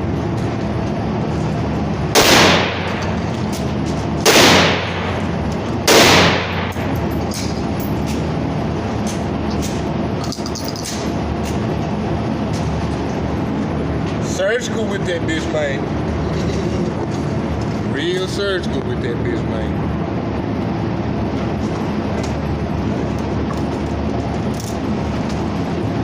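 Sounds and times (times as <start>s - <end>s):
steady low rumble: 0.0s - 26.0s
gunshots with echo: 2.1s - 3.3s, 4.2s - 7.0s.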